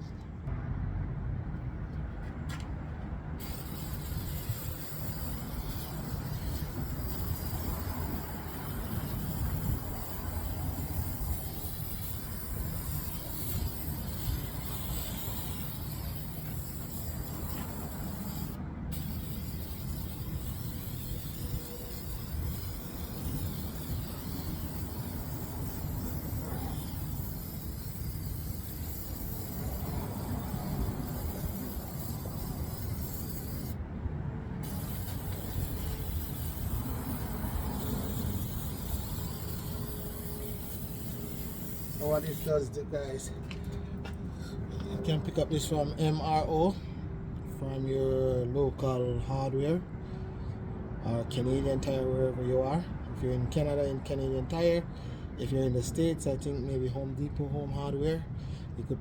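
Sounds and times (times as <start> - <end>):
steady low rumble: 0.0 - 47.8
aerosol spray hissing: 3.4 - 33.8, 34.6 - 42.6.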